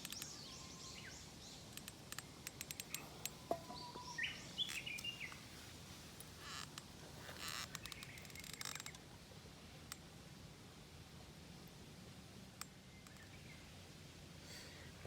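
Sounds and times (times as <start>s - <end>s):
bird chirping faintly: 0.0s - 5.7s.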